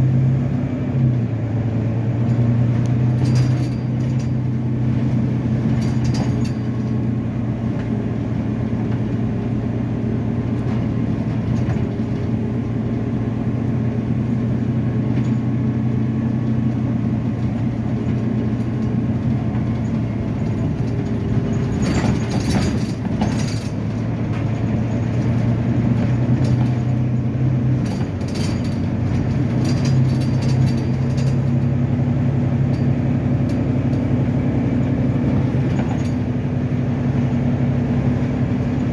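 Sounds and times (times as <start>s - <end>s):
bus diesel engine humming: 0.0s - 38.9s
clicks and rattles: 2.3s - 7.1s, 17.4s - 31.8s, 35.3s - 36.6s.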